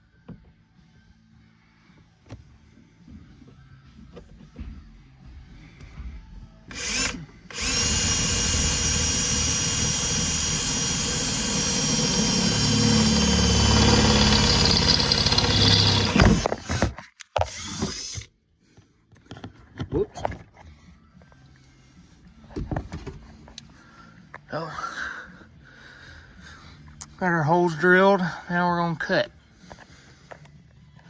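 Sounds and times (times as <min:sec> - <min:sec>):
power drill boring through metal: 0:06.7 - 0:18.2.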